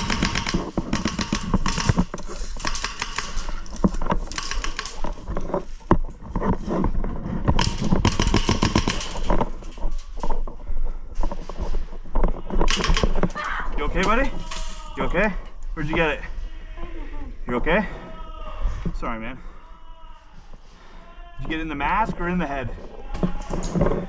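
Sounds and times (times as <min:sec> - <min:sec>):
airsoft guns firing bursts: 0:00.0 - 0:05.4, 0:07.5 - 0:09.4.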